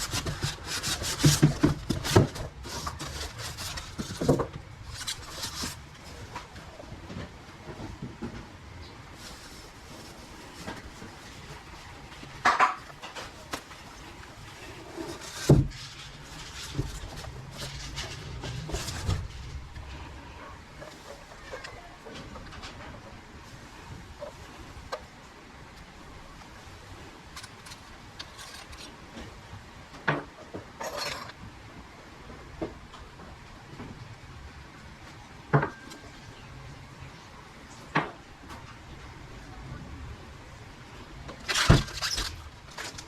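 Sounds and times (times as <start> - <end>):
hard objects clattering: 0.0 - 8.5, 9.3 - 23.0, 30.0 - 31.4
rustle or scrape: 0.0 - 25.0, 26.4 - 29.6, 30.8 - 31.4, 41.3 - 43.0.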